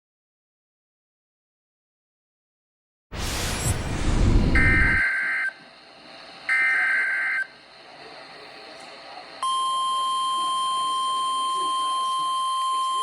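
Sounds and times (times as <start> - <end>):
radio noise: 3.2 - 5.0
buzzy digital data tones: 3.2 - 5.2
steady warning alarm tone: 3.4 - 5.6, 6.5 - 7.6.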